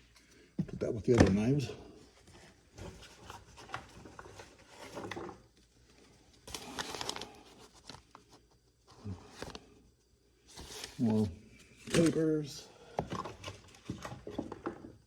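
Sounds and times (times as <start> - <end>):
papers rustling: 6.0 - 8.5, 10.5 - 12.5.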